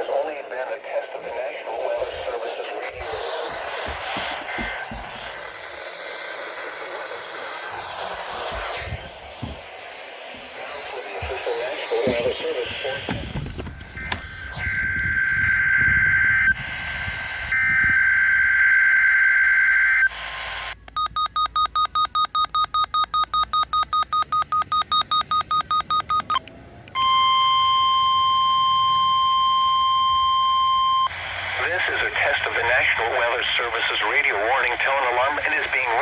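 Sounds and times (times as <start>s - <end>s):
steady warning alarm tone: 2.0s - 6.0s, 7.7s - 20.2s, 20.9s - 31.2s
pulsing beep: 20.9s - 26.4s, 27.0s - 31.1s.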